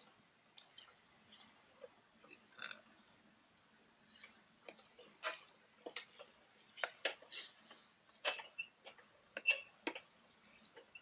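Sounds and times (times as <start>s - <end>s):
utensil scraping against a pan: 4.0s - 11.0s.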